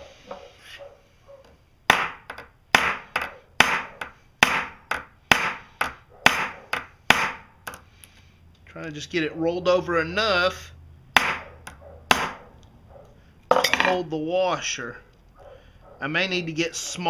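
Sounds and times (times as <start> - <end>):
hammer striking metal: 11.2 - 12.4.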